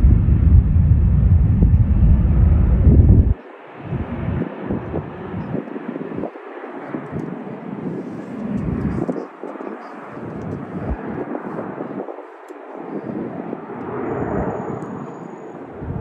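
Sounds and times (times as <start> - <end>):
jet airliner engine noise: 0.0 - 16.0
wind buffeting microphone: 0.0 - 16.0.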